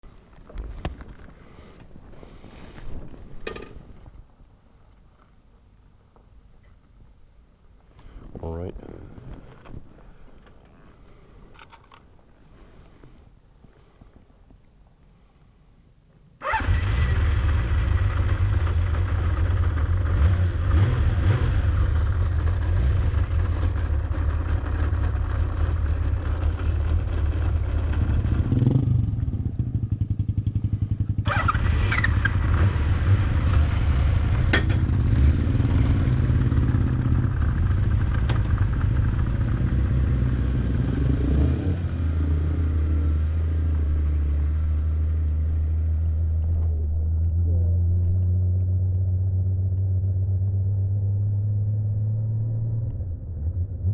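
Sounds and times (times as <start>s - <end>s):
motorcycle engine running: 16.5s - 41.2s.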